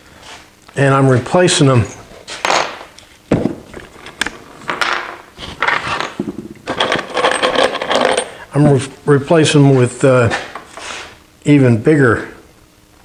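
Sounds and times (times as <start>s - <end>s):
metal screws clinking and rattling: 4.7s - 8.5s.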